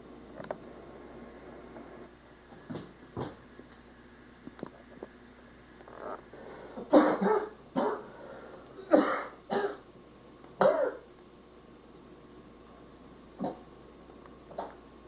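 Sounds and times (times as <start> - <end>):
man coughing: 6.9 - 8.0, 8.8 - 9.8, 10.6 - 11.0.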